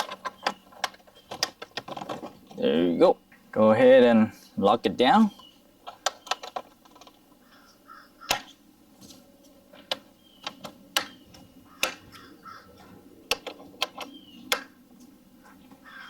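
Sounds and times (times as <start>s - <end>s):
plastic latch clips snapping shut: 13.3s - 14.7s.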